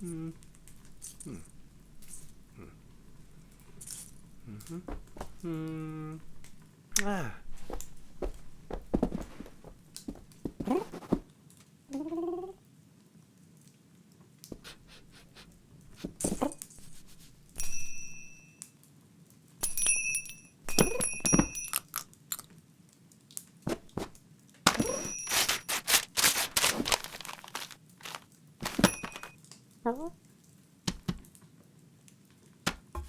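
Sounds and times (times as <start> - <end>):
scratching and rustling noises: 7.4 - 11.3, 14.5 - 17.9, 23.7 - 29.4
small bell ringing: 17.6 - 18.6, 19.6 - 22.0, 24.8 - 25.7, 28.7 - 29.4.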